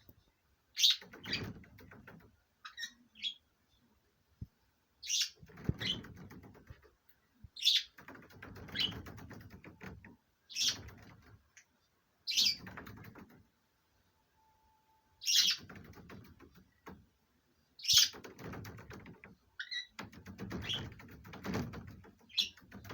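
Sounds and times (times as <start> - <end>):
budgerigar high chirp: 15.2 - 15.6.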